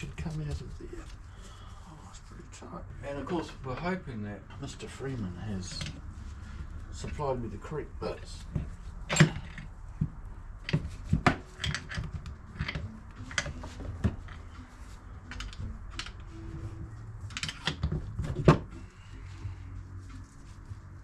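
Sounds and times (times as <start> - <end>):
metal parts and tools clicking: 10.6 - 13.6, 15.3 - 16.3, 17.3 - 18.0.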